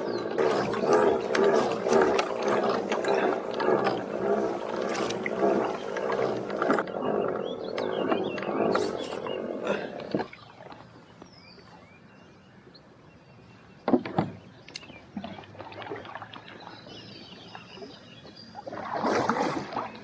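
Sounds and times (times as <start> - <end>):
water rushing: 0.4 - 6.9.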